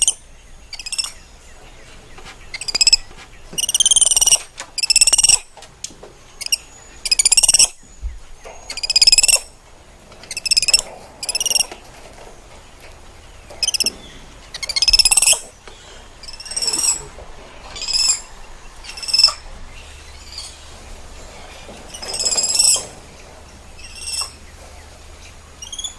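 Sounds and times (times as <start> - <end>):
monkey shrill trilled calls: 0.0 - 1.2, 2.5 - 3.0, 3.6 - 5.5, 6.4 - 7.8, 8.7 - 9.5, 10.3 - 11.7, 14.5 - 15.4, 16.2 - 17.0, 17.8 - 19.4, 21.9 - 22.8, 23.9 - 24.4, 25.6 - 25.9.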